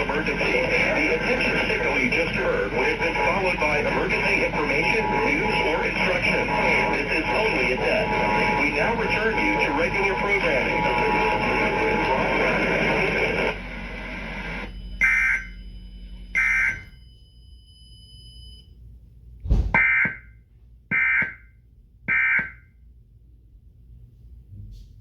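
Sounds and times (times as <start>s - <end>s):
broadcast sound: 0.0s - 15.6s.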